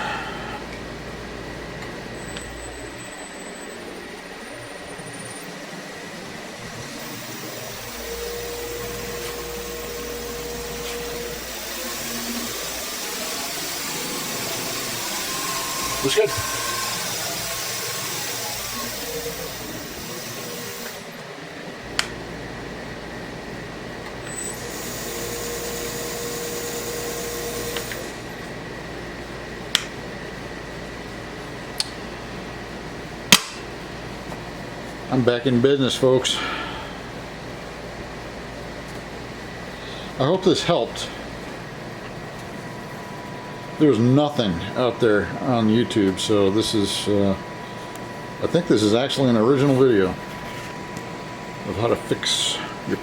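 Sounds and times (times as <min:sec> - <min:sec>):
steady whine: 0:00.0 - 0:53.0
thin whine: 0:01.8 - 0:22.1
wood lathe motor hum: 0:05.4 - 0:21.2, 0:24.3 - 0:28.5.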